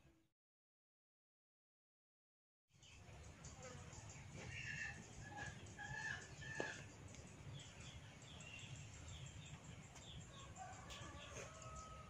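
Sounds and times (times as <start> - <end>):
small birds chirping: 2.7 - 12.0
chickens clucking: 4.4 - 8.4, 9.4 - 12.0.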